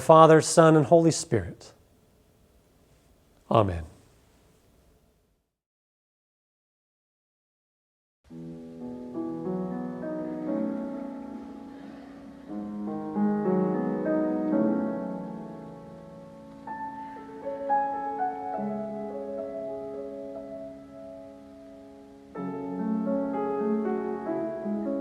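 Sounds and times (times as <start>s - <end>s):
solo piano playing slow music: 8.3s - 25.0s.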